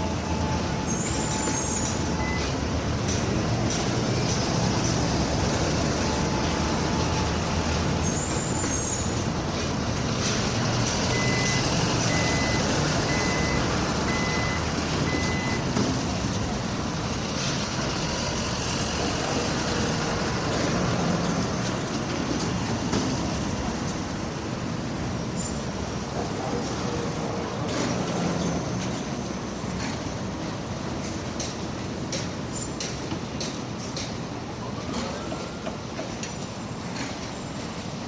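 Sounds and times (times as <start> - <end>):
heavy vehicle engine running: 0.0 - 32.5
backup alarm beeping: 2.2 - 2.6, 11.1 - 15.7.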